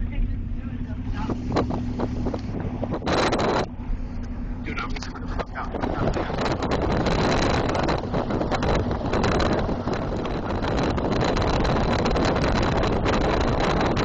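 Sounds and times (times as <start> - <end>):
road noise: 0.0 - 14.0
vehicle engine: 0.0 - 14.0
wind rushing over microphone: 0.4 - 14.0.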